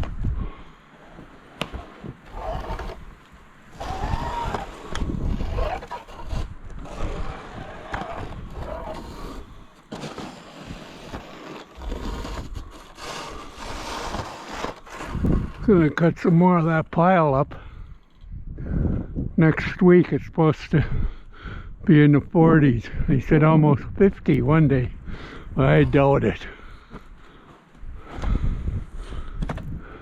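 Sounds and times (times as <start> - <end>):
snow shovel scraping snow: 1.0 - 17.2
short squeaks: 2.2 - 3.0, 3.7 - 6.4.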